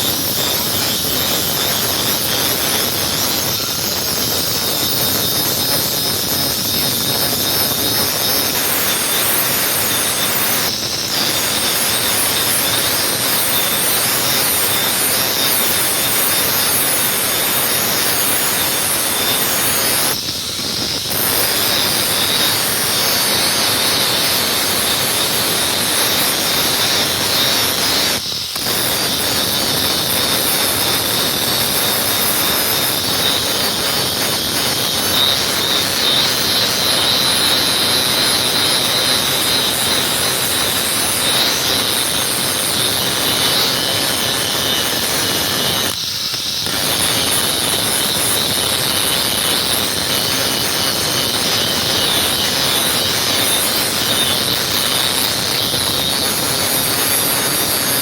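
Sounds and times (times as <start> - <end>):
knife grinding on sharpening wheel: 0.0 - 58.0.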